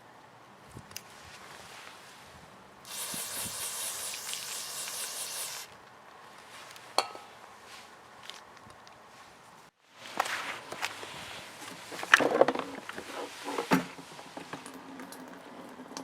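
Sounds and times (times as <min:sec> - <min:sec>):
steady spray hiss: 0:01.6 - 0:05.8.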